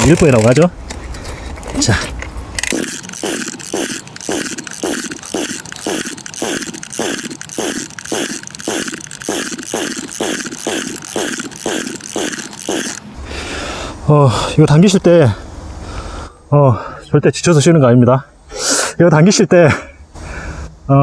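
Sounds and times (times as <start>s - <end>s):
brush cutter pull-starter whirring: 0.0s - 0.6s, 2.6s - 13.2s.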